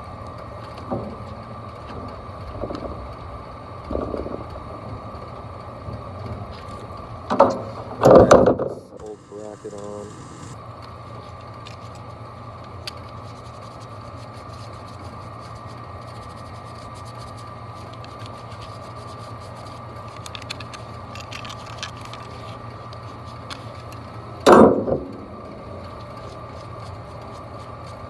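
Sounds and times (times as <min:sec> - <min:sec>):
blower motor humming with whine: 0:00.0 - 0:28.0
loud knock: 0:24.5 - 0:25.4.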